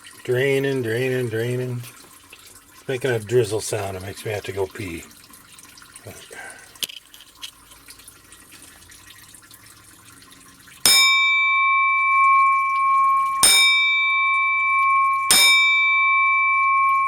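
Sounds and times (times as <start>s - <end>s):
fluid trickling: 0.0s - 17.0s
bell-like metallic ring: 10.8s - 17.0s.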